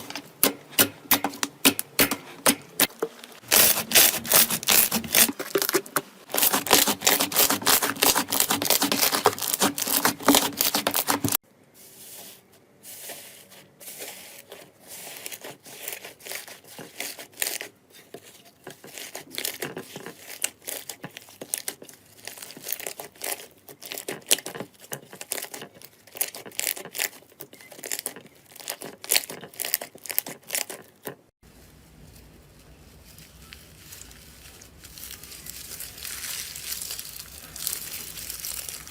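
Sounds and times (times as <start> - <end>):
slime crackling and popping: 33.4 - 38.9.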